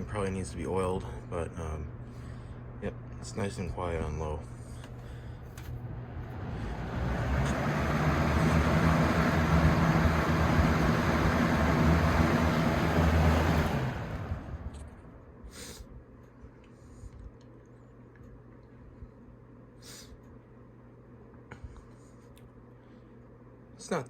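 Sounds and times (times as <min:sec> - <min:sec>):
fan motor hum: 0:00.0 - 0:24.0
box fan air rush: 0:04.5 - 0:16.1.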